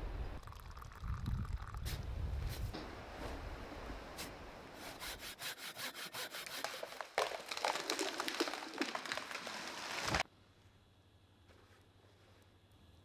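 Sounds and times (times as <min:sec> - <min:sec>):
hand saw cutting wood: 0:04.8 - 0:07.4.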